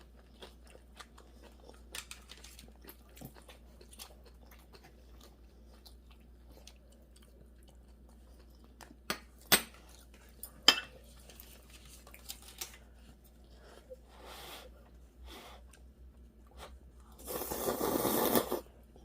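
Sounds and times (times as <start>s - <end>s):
quiet chewing: 0.0s - 18.6s.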